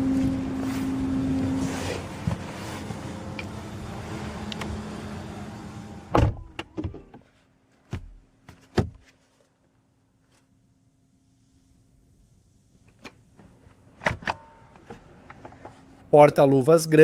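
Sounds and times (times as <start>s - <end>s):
car door shutting: 6.0s - 7.2s.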